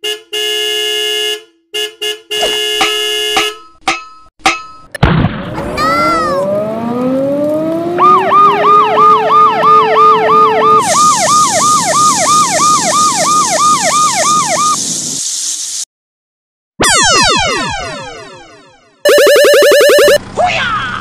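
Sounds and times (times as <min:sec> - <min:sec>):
emergency siren wailing and yelping: 0:05.8 - 0:14.8, 0:16.8 - 0:20.2
hiss: 0:14.5 - 0:15.9.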